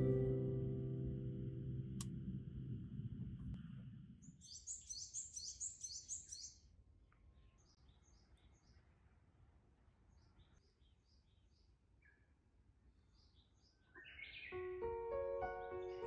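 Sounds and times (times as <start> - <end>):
small bird chirping: 4.2 - 6.7.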